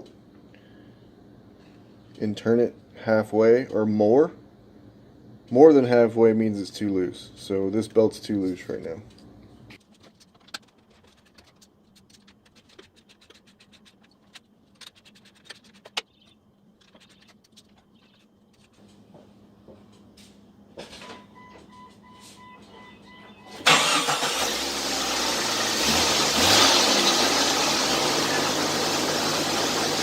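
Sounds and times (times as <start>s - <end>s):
car engine cranking and starting: 23.5s - 30.0s.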